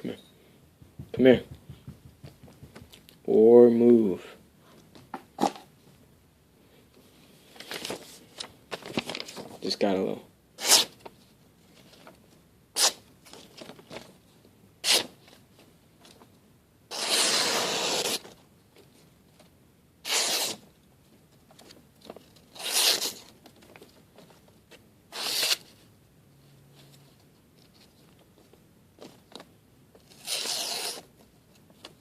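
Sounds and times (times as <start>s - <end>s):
knife slicing through paper: 16.9s - 18.2s, 20.0s - 20.6s, 22.6s - 23.3s, 25.1s - 25.6s, 30.1s - 31.1s.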